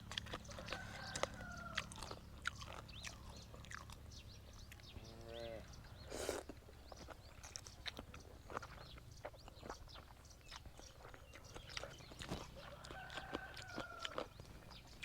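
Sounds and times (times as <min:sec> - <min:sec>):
low steady hum: 0:00.0 - 0:09.6
chewing and crunching: 0:00.0 - 0:15.0.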